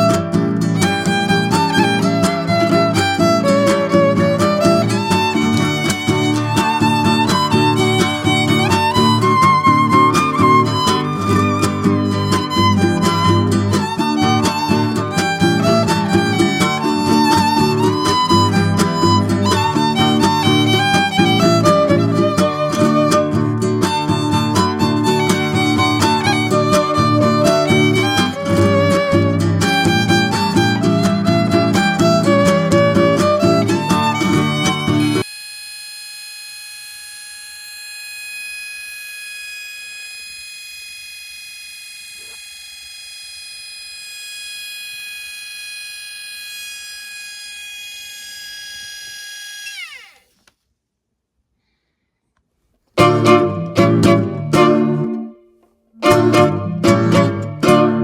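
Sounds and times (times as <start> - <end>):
string instrument music: 0.0 - 35.3, 53.0 - 55.4, 56.0 - 58.0
washing machine motor whining: 0.7 - 22.1, 33.2 - 50.5.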